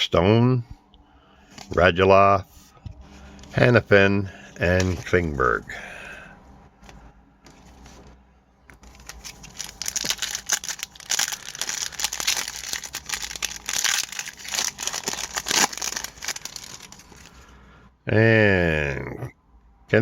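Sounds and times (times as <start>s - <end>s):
wrapper crinkling and tearing: 8.7s - 17.4s.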